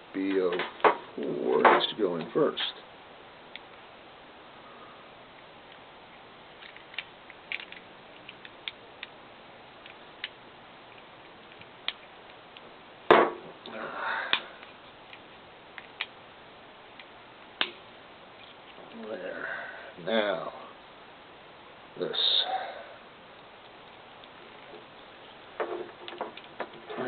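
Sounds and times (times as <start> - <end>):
plastic parts clicking: 6.6 - 9.1, 25.6 - 27.0.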